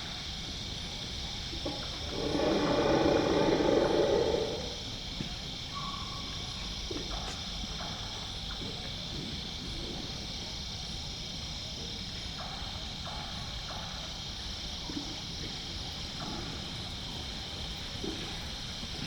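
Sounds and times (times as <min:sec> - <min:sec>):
rhinoceros breathy call: 0:01.6 - 0:05.1.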